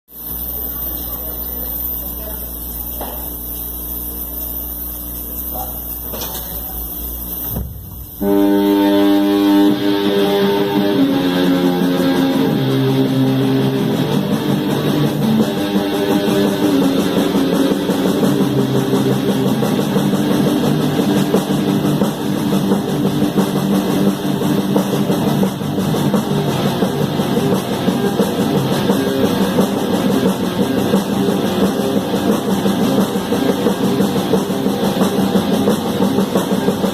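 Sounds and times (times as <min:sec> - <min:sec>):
electric guitar chords: 0:00.1 - 0:36.9
steady low hum: 0:00.1 - 0:36.9
rock band playing: 0:07.5 - 0:36.9.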